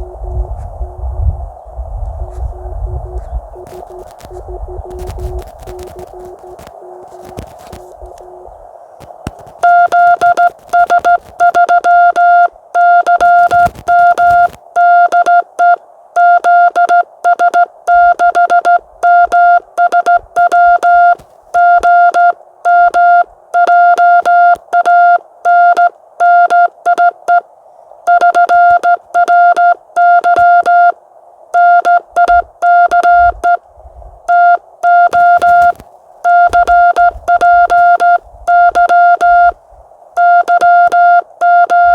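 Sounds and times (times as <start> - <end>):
radio receiver hiss: 2.0 - 15.8, 34.8 - 40.8
morse code tone: 2.5 - 8.6, 9.2 - 27.4, 28.1 - 31.0, 31.6 - 33.6, 34.3 - 39.6, 40.2 - 41.9.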